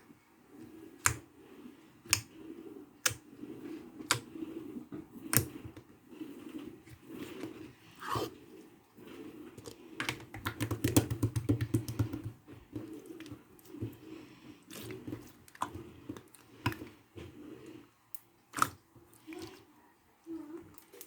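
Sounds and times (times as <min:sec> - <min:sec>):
slime kneaded by hand: 0:09.3 - 0:19.7.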